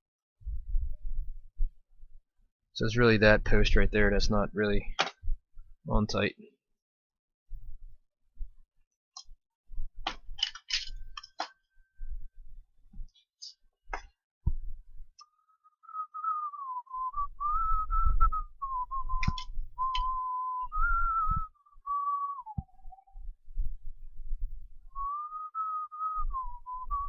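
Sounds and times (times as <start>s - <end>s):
person whistling a tune: 15.3s - 23.3s, 24.9s - 27.0s.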